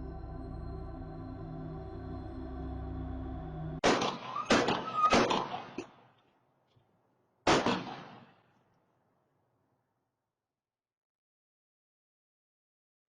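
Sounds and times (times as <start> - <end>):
gunshots: 3.8 - 6.0, 7.4 - 8.4.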